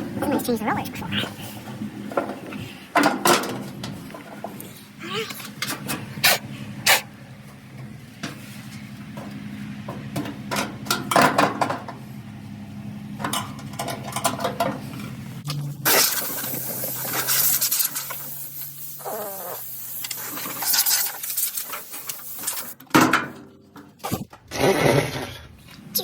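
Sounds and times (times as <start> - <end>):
loud hiss: 15.8 - 22.8.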